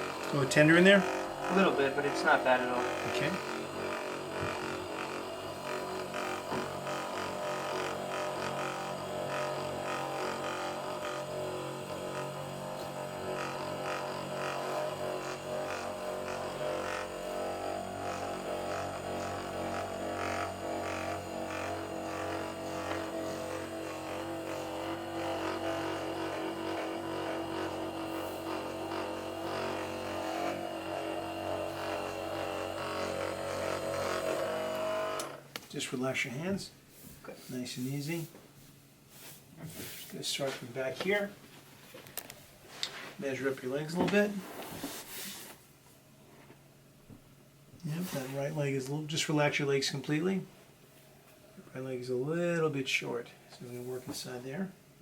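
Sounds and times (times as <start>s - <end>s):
electric massager buzzing: 0.0s - 35.6s.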